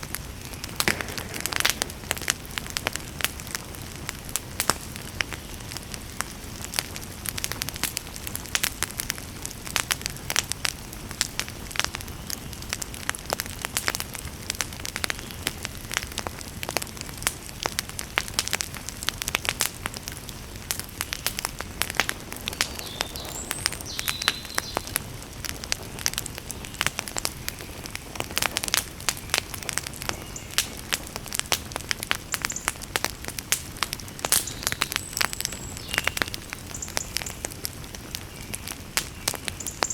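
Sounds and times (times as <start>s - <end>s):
low rush of flame: 0.0s - 35.5s
campfire crackling and popping: 0.0s - 39.9s.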